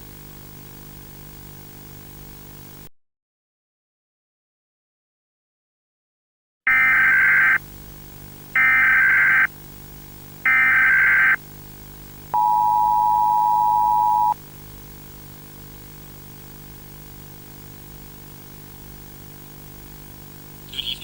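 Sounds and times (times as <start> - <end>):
two-tone attention signal: 10.5 - 11.4, 12.4 - 14.4
low steady hum: 12.2 - 15.8
digital data bursts: 20.7 - 21.0.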